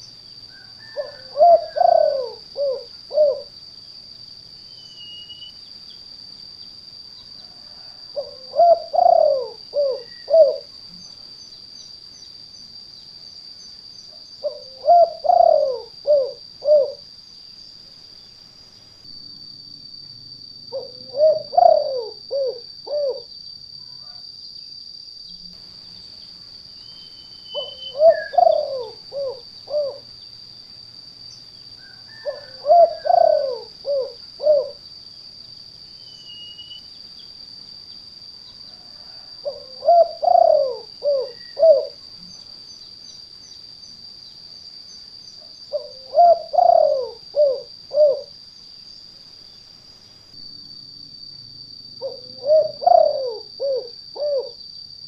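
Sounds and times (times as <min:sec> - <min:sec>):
dove cooing: 0:00.5 - 0:03.5, 0:07.5 - 0:10.7, 0:14.4 - 0:17.0, 0:20.7 - 0:23.3, 0:27.5 - 0:30.1, 0:31.9 - 0:34.8, 0:38.8 - 0:42.0, 0:45.7 - 0:48.3, 0:52.0 - 0:54.6.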